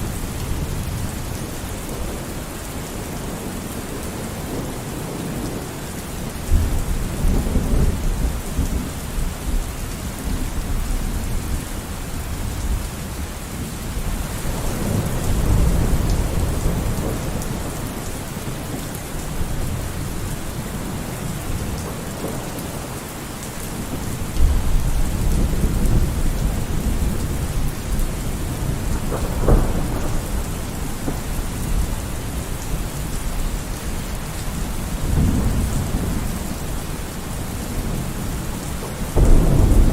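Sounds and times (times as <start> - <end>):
heavy rain: 0.0 - 39.9
thunder rumbling: 13.9 - 23.0, 23.7 - 39.9
sharp thunder crack: 39.2 - 39.9.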